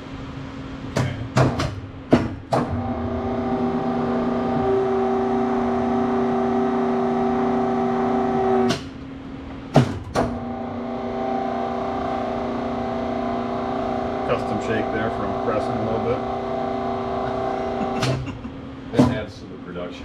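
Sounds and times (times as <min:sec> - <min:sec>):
hydraulic press pump humming: 0:00.8 - 0:19.4
pump knock: 0:01.0 - 0:03.1, 0:09.8 - 0:10.4, 0:19.0 - 0:19.2.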